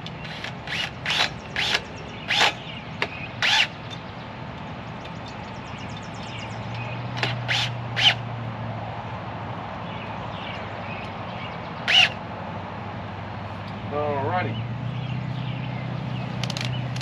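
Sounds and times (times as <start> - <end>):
harsh bird calls: 0.0 - 8.2, 9.9 - 12.2.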